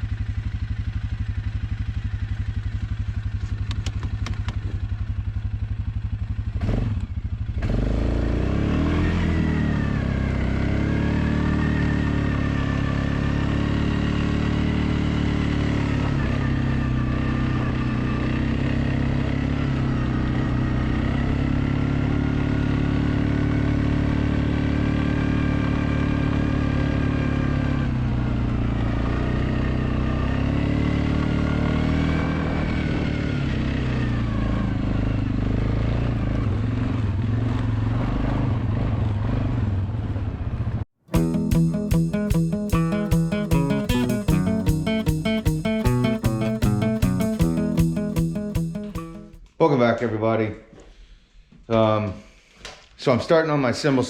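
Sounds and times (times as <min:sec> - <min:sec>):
engine running: 0:41.1 - 0:49.4.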